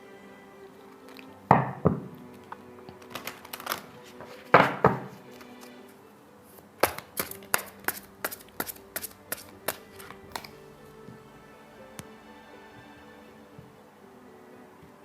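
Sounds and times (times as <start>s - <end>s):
faint background music: 0.0s - 15.0s
cards being shuffled: 10.3s - 10.8s
sharp card slaps: 10.3s - 11.0s.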